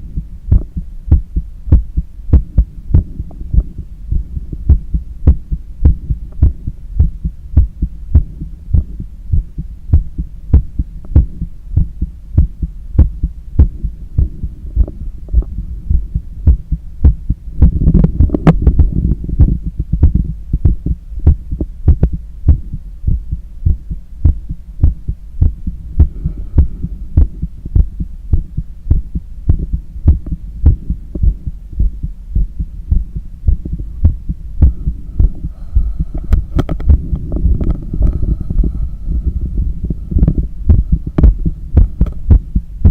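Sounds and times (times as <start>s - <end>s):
heartbeat through stethoscope: 0.0s - 42.9s
low rumble: 0.0s - 42.9s
rustling noise: 17.6s - 19.6s, 36.1s - 42.4s.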